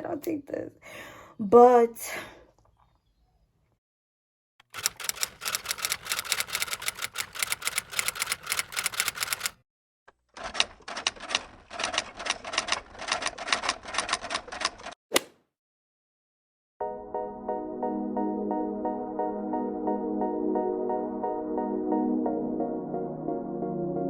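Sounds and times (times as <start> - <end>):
keyboard typing: 4.6 - 9.6.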